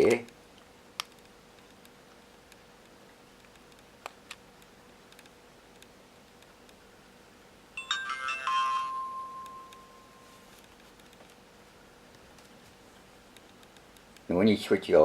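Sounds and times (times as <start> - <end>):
electronic power-on chime: 7.8 - 10.5.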